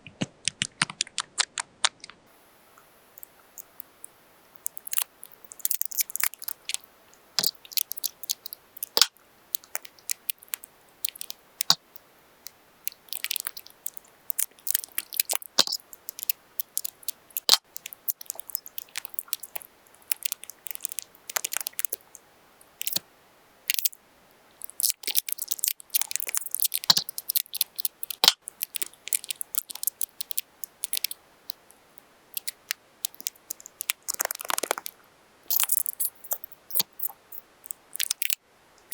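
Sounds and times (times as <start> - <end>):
paper crinkling: 33.1 - 34.9.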